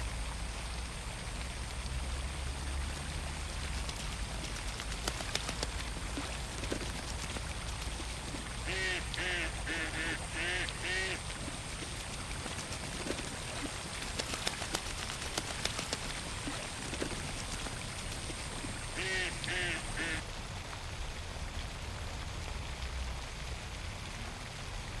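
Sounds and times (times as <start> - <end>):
pond ambience: 0.0 - 25.0
water ticks and splashes: 0.0 - 25.0
duck quacking: 8.7 - 11.2, 19.0 - 20.2.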